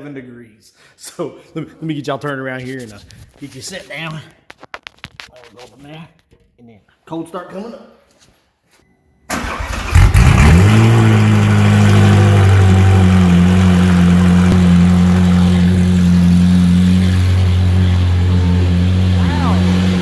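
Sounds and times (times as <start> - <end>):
car engine starting and idling: 9.3 - 20.0
engine cranking: 9.3 - 20.0.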